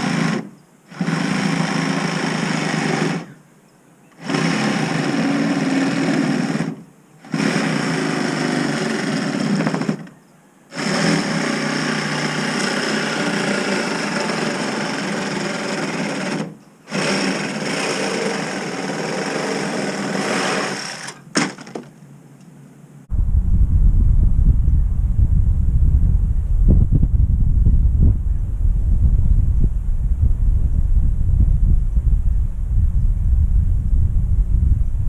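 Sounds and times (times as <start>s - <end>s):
power tool motor running: 0.0s - 3.3s, 4.2s - 10.1s, 10.7s - 21.8s.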